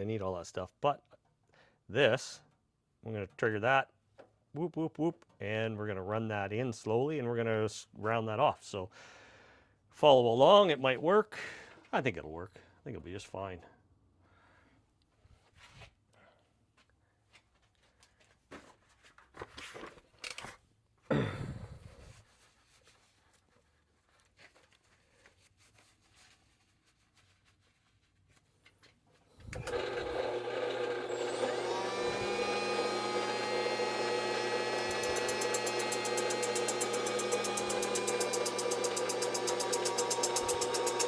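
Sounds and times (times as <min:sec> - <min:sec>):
power tool motors whining: 0:29.4 - 0:41.0
tool handling clicks: 0:34.8 - 0:41.0.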